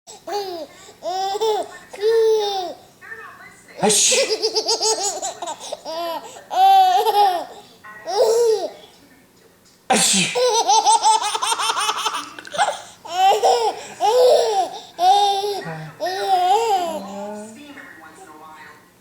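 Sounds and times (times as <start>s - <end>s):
baby giggling: 0.2s - 2.8s, 3.9s - 8.8s, 9.9s - 17.2s
man sneezing loudly: 3.8s - 4.3s, 9.9s - 10.5s.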